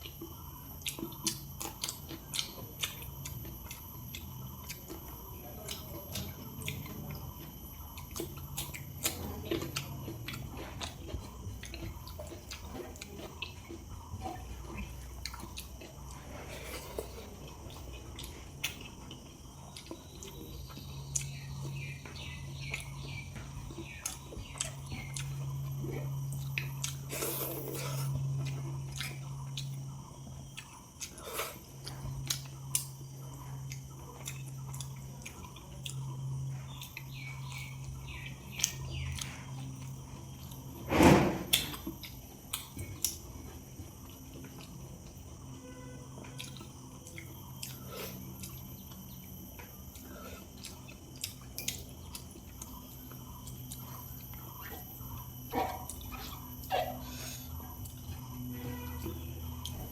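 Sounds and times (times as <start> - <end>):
chewing and wet mouth sounds: 0.0 - 59.9.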